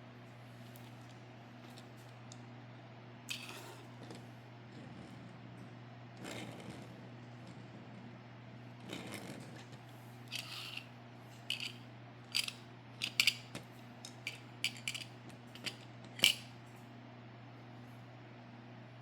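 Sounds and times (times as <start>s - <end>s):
faint steady hum: 0.0s - 19.0s
toy truck clicks and scrapes: 10.3s - 10.9s, 11.5s - 11.8s, 12.4s - 13.4s, 14.3s - 16.4s.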